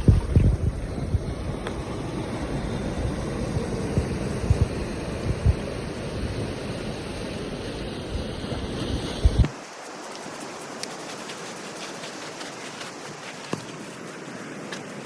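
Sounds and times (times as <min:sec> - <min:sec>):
wind buffeting microphone: 0:00.0 - 0:09.6
steady hiss: 0:00.0 - 0:15.0
ocean surf: 0:00.9 - 0:15.0.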